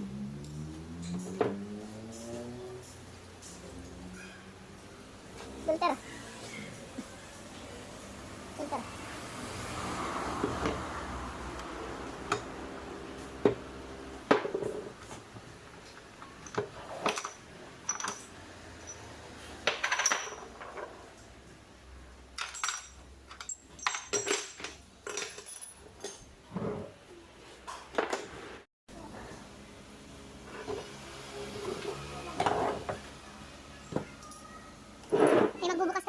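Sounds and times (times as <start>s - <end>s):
metal tools clinking: 16.3s - 21.3s, 22.4s - 26.3s.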